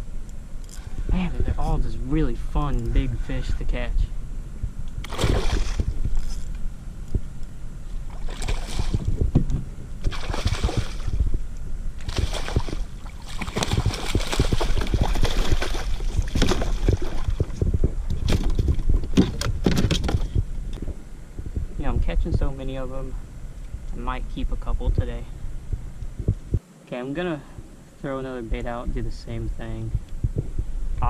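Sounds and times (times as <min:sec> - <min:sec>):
water splashing around kayak: 0:05.0 - 0:06.1, 0:08.1 - 0:09.3, 0:10.0 - 0:11.3, 0:12.0 - 0:20.4.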